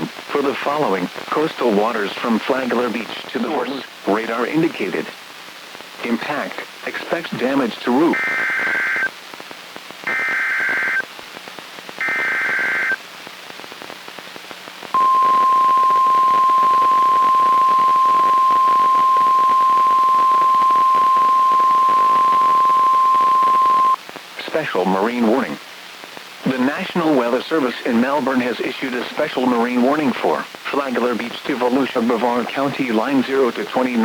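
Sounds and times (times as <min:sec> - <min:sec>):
faint radio hiss: 0:00.0 - 0:34.0
steady warning alarm tone: 0:15.0 - 0:24.0
warbling digital data bursts: 0:15.0 - 0:24.0.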